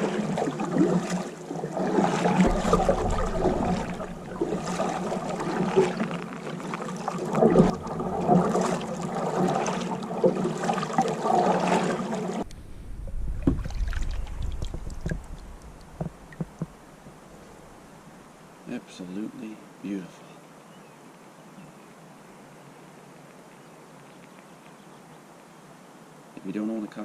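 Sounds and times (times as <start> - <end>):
kayak paddle strokes: 0.0 - 17.9
water splashing against hull: 0.0 - 18.2
low rumble: 2.2 - 10.1, 12.4 - 17.9.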